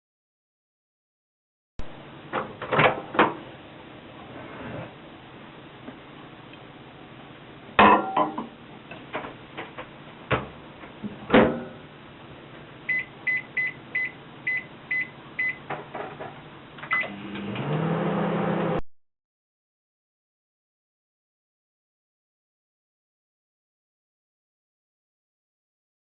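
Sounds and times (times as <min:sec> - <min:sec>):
microwave oven humming: 0:01.8 - 0:18.8
short keypad beeps: 0:12.9 - 0:15.6.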